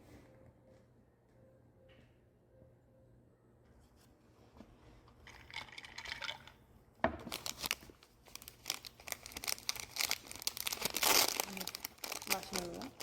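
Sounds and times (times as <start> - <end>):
pastry wrapper crinkling and tearing: 7.3 - 13.0.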